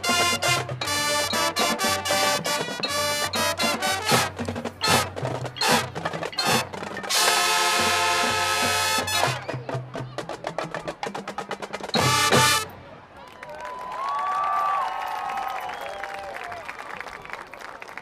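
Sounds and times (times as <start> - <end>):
drumline strokes: 0.0 - 12.8
marching band playing: 0.0 - 12.8.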